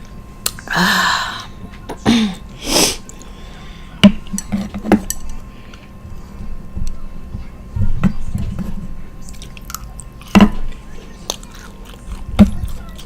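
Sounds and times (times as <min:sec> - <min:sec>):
dishes and utensils handled: 0:04.0 - 0:05.9.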